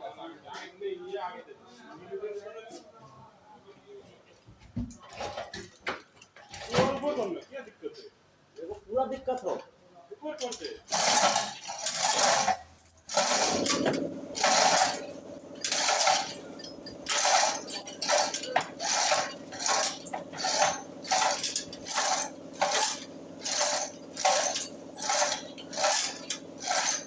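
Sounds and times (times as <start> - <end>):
sharp metallic clack: 10.4 - 27.0
electric motor humming: 10.5 - 27.0.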